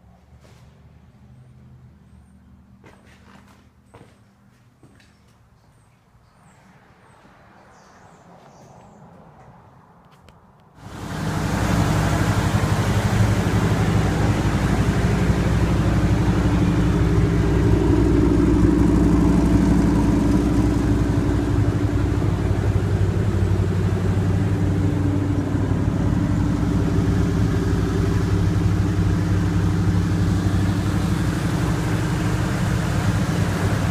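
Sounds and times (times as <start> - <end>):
engine idling: 10.8 - 33.9.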